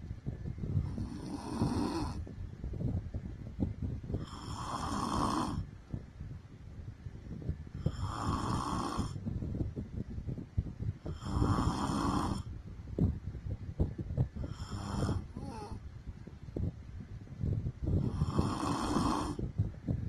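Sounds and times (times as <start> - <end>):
woman snoring: 0.8 - 2.2, 4.2 - 5.6, 7.8 - 9.2, 11.1 - 12.5, 14.4 - 15.8, 18.0 - 19.4.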